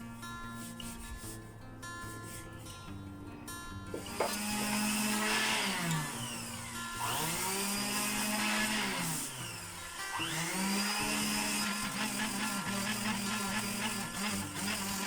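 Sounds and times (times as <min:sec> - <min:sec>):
power tool motor whining: 0:03.9 - 0:15.0.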